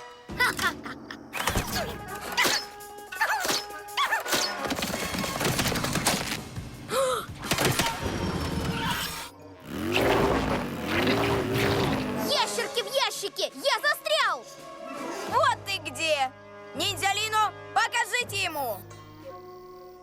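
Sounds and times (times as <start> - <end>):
cartoon background music: 0.0 - 20.0.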